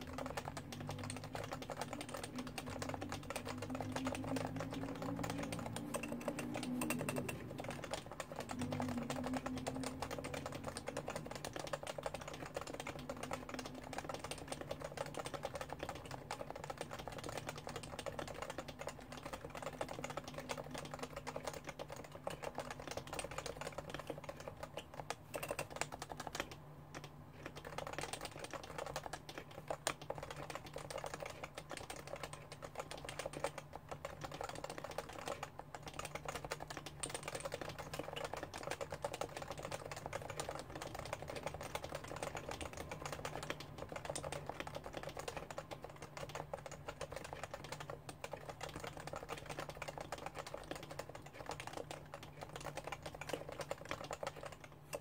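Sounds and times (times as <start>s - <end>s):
keyboard typing: 0.0s - 55.0s.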